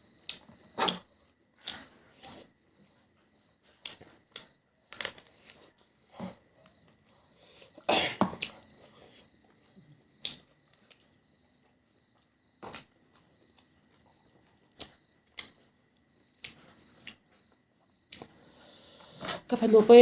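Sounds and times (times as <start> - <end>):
mouth clicks and smacks eating: 14.7 - 15.7.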